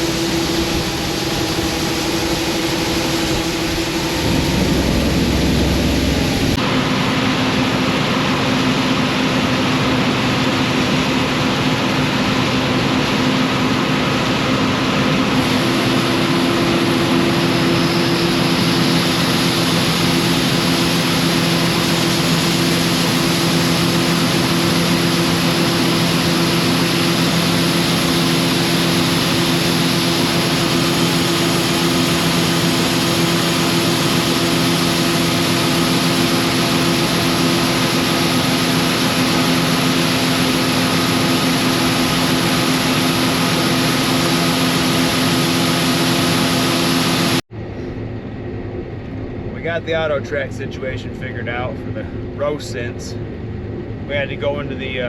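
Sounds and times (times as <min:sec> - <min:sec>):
higher machine hum: 0:00.0 - 0:07.1, 0:15.2 - 0:49.5
combine harvester drone: 0:00.0 - 0:55.0.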